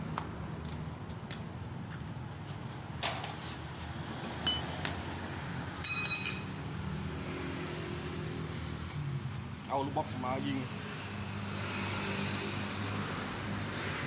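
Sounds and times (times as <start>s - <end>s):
metal tools clinking: 4.5s - 4.7s, 5.8s - 6.6s.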